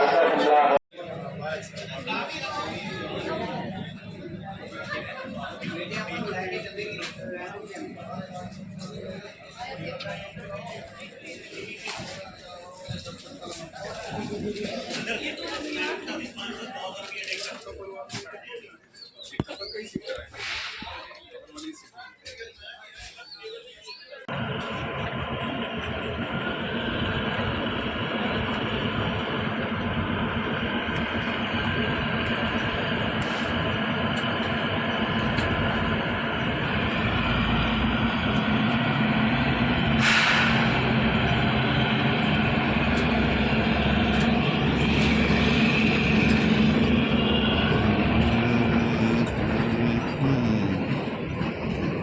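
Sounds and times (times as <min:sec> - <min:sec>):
train rumbling: 0:01.0 - 0:16.2, 0:24.3 - 0:52.0
sharp hiss: 0:40.0 - 0:40.7.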